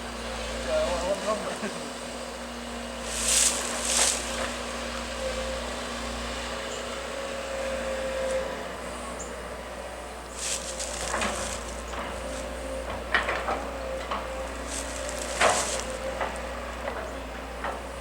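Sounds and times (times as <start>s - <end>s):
distant machinery hum: 0.0s - 18.0s
dry brush crackling and snapping: 2.8s - 5.3s, 10.2s - 17.2s.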